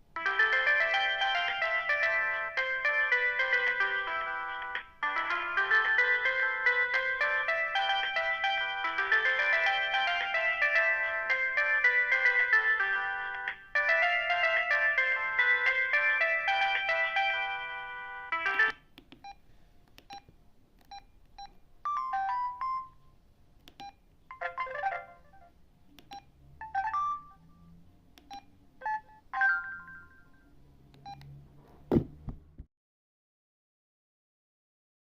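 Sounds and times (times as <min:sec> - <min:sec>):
mobile phone ringtone: 0:00.2 - 0:18.8, 0:21.9 - 0:23.0, 0:24.3 - 0:25.5, 0:26.6 - 0:27.6, 0:28.8 - 0:30.5
keypad beeps: 0:19.1 - 0:19.4, 0:20.0 - 0:23.0, 0:23.7 - 0:24.9, 0:26.0 - 0:27.4, 0:28.2 - 0:30.1, 0:31.0 - 0:31.3
thump: 0:31.9 - 0:32.6.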